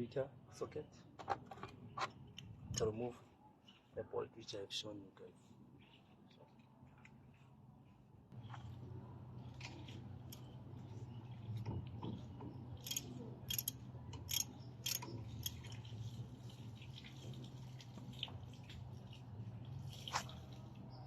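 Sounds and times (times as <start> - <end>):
ratchet clicking: 12.8 - 15.8.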